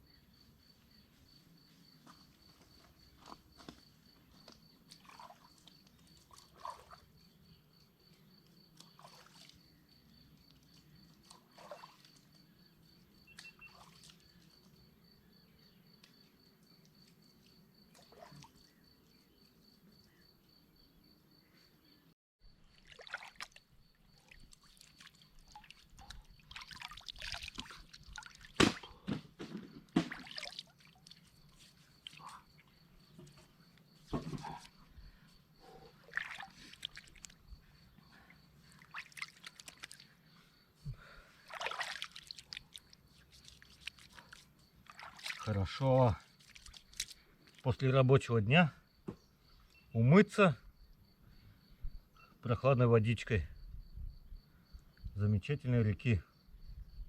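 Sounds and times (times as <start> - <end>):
water splashing and trickling: 4.5 - 7.3, 8.7 - 14.9, 16.7 - 18.8, 22.5 - 48.3.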